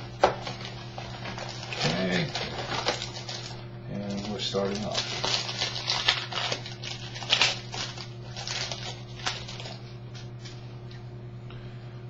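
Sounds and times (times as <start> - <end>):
foil wrapper crinkling and tearing: 0.0 - 10.6.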